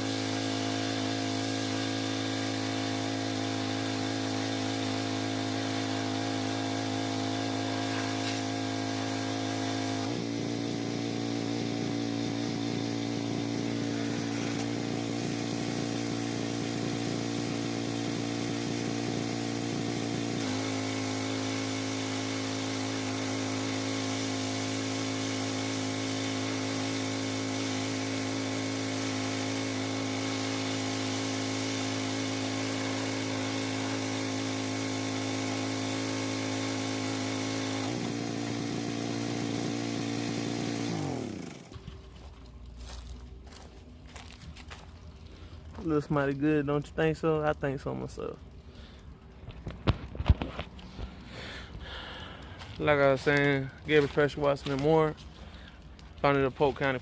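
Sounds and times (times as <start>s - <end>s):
pressure washer engine running: 0.0s - 57.0s.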